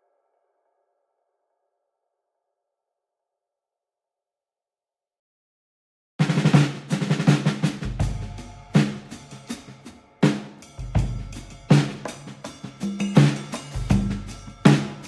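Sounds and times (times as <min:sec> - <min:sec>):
drum-kit beat: 0:06.2 - 0:15.0.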